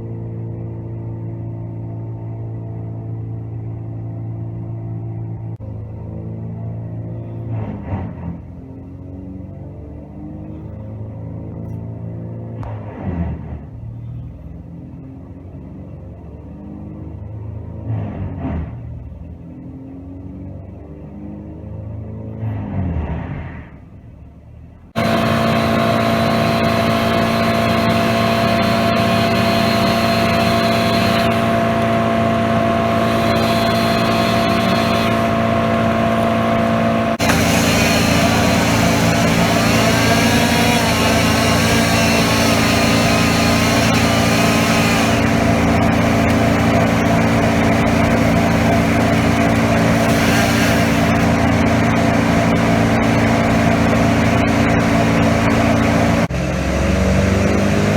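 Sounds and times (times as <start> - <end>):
machine engine running: 24.9 - 57.9.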